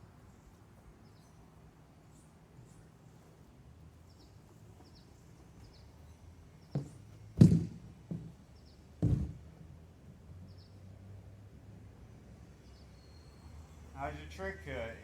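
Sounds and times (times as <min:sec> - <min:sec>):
faint bird chirps: 0:00.2 - 0:03.2, 0:12.6 - 0:13.9
dull thumps and knocks: 0:06.7 - 0:08.4, 0:09.0 - 0:09.5.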